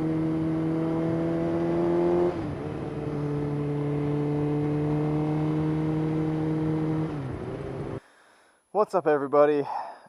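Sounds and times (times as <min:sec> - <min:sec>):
motorcycle engine running: 0:00.0 - 0:08.0.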